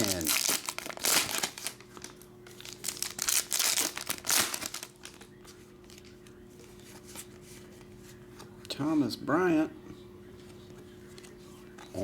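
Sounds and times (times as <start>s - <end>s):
wrapper crinkling and tearing: 0.0s - 5.3s
faint steady hum: 0.0s - 12.0s.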